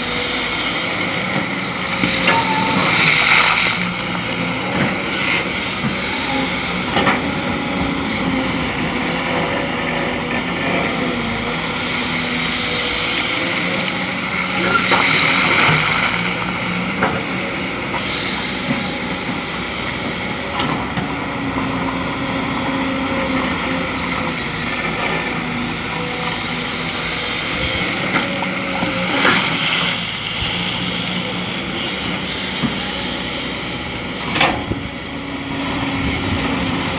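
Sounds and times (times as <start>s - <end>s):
excavator diesel engine running: 0.0s - 36.9s.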